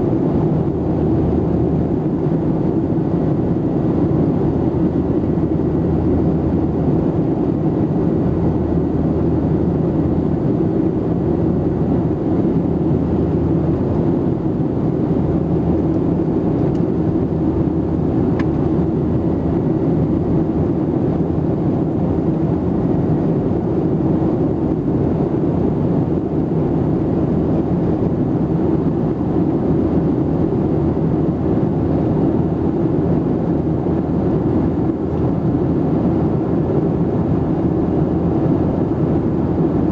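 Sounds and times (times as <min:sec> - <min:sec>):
jet engine roar in cabin: 0:00.0 - 0:39.9.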